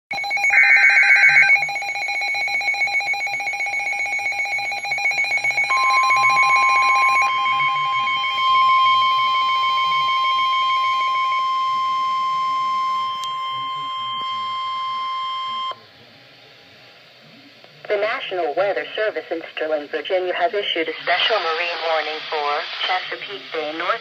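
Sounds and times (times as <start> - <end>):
pulsing electronic alarm tone: 0.2 - 15.8
warbling data tones: 0.2 - 15.8.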